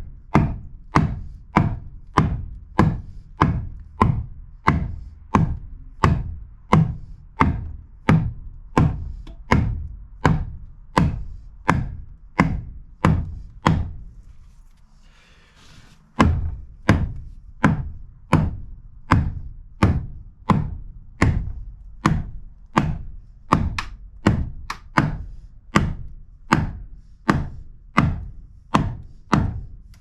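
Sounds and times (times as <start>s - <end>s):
hammer blows on wood: 0.0s - 14.4s, 15.2s - 30.0s.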